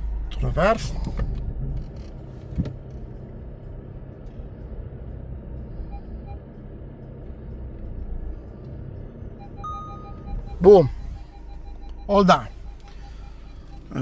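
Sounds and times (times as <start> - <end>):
engine and road rumble: 0.0 - 14.0
short faint beeps: 9.4 - 14.0.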